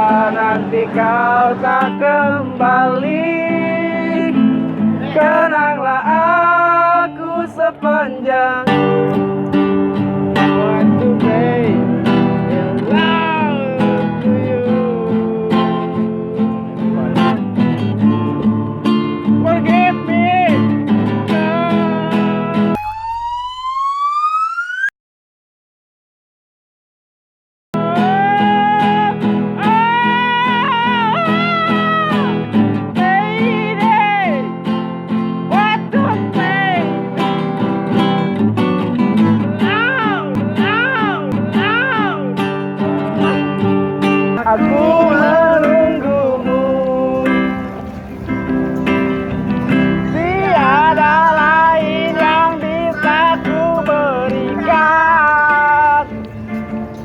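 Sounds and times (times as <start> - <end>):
man singing pop ballad: 0.0 - 17.4, 19.4 - 22.6, 27.8 - 34.5, 35.5 - 37.1, 39.2 - 43.6, 44.4 - 47.9, 49.7 - 56.2
acoustic guitar strumming: 0.0 - 23.7, 27.8 - 57.0
person singing held notes: 49.7 - 56.8.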